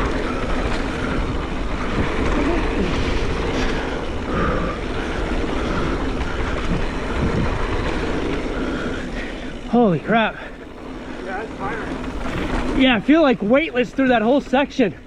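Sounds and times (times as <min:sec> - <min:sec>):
wind on microphone: 0:00.0 - 0:09.2
bike clattering: 0:00.0 - 0:15.0
bike tyres rumbling over dirt: 0:00.0 - 0:15.0.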